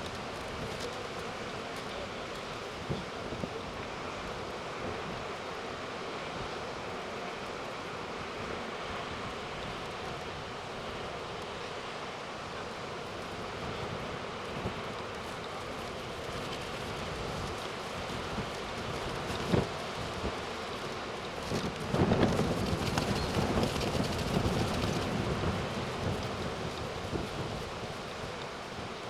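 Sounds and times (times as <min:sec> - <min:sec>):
wind buffeting microphone: 0:13.3 - 0:29.0.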